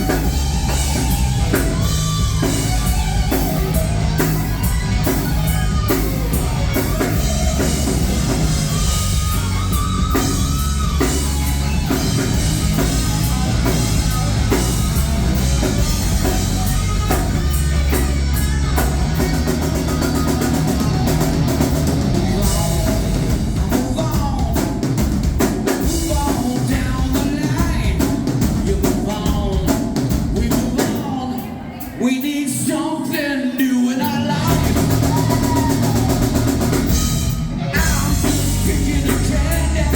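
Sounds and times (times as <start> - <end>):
live rock band playing: 0.0 - 39.9
person singing: 15.6 - 25.1, 25.8 - 37.0, 37.6 - 39.9.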